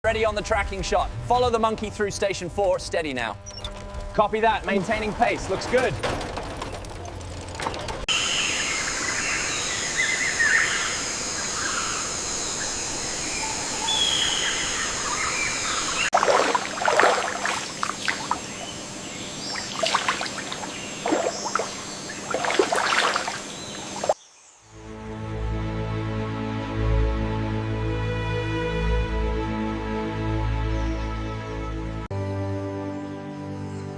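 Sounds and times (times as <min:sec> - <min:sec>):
steady high hiss: 0:08.1 - 0:16.1
birds chirping: 0:08.1 - 0:24.7.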